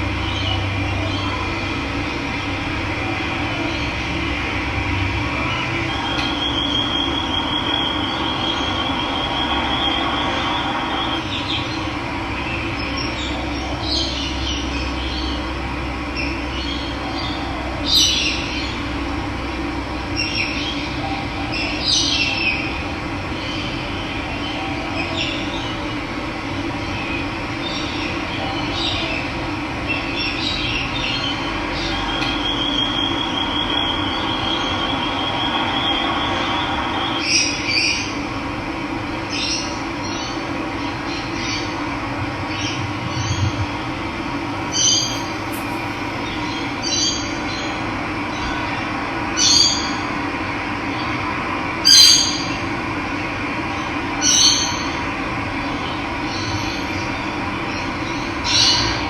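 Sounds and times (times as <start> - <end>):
birds chirping: 44.6 - 47.3
high thin bird trill: 44.7 - 46.7.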